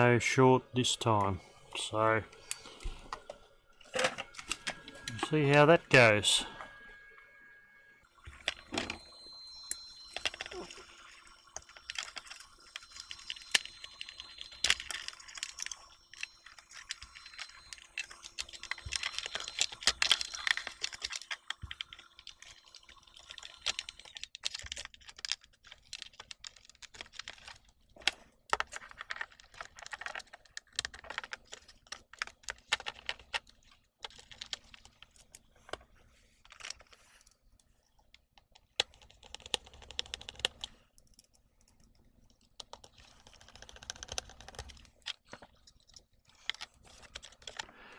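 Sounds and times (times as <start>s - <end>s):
clicks of plastic parts handled: 23.2s - 47.7s.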